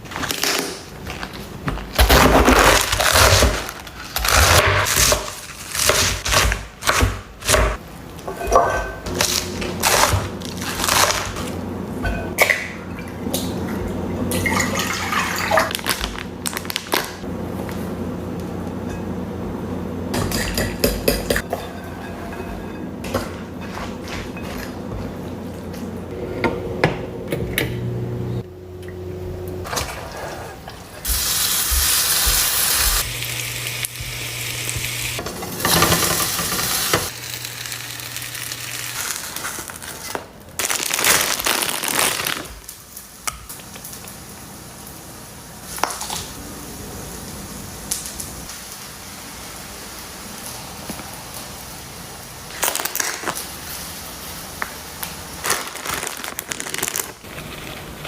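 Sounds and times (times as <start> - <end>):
kitchen knocks and clinks: 7.5 - 9.2.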